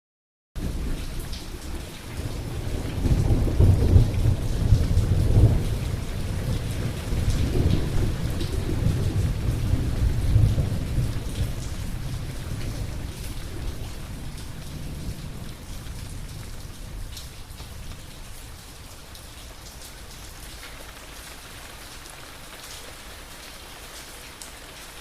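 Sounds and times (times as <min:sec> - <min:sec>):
low rumble of thunder: 0:00.6 - 0:19.9
rain hissing and pattering: 0:00.6 - 0:25.0.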